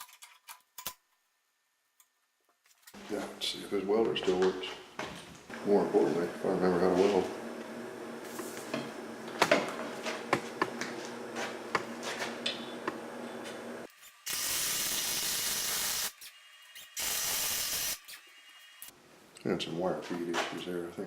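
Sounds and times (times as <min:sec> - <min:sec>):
welder arc crackling: 0:13.7 - 0:16.2, 0:17.0 - 0:18.1.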